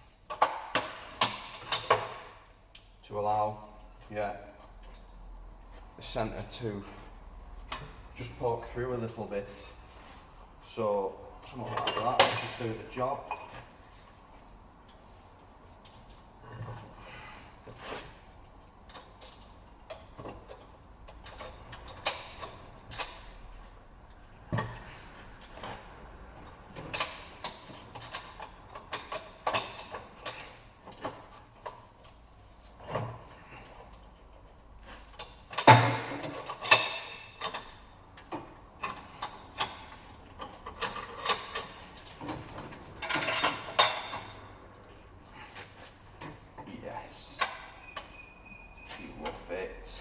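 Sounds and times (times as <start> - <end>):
metal clanking at a bench vise: 0.3 - 2.4, 11.6 - 13.5, 26.7 - 31.3, 35.1 - 44.6
light metal clicks and knocks: 35.1 - 45.0
metal clattering rattle: 38.4 - 44.6.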